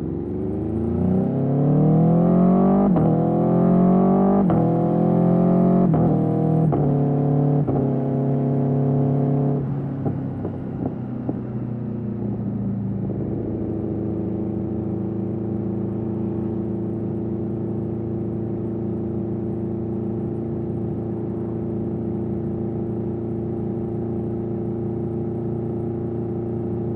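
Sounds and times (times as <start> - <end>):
motorcycle engine revving: 0.0 - 11.6.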